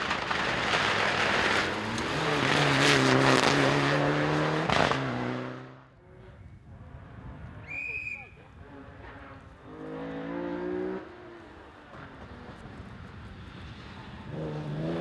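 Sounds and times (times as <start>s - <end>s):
engine sharp cracks: 0.0s - 3.8s
rally car engine passing at speed: 0.0s - 6.2s, 8.6s - 15.0s.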